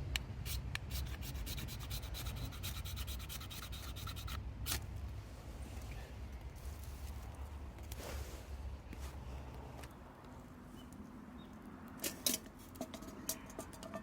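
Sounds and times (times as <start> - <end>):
quick scraping strokes: 0.5 - 4.8.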